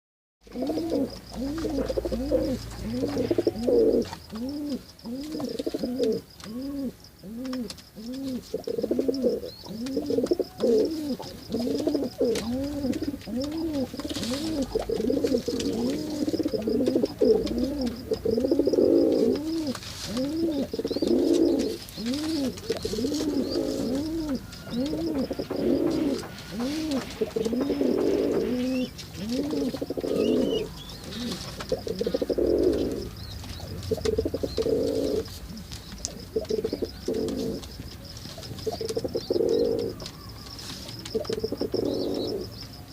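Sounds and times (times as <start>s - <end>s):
pigeons cooing: 0.4s - 42.6s.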